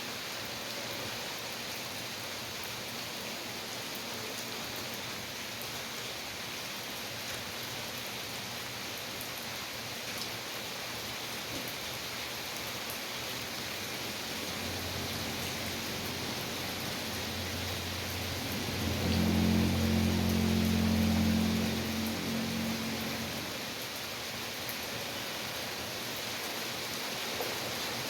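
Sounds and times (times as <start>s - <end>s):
steady rain falling: 0.0s - 28.0s
low steady hum: 14.5s - 23.6s.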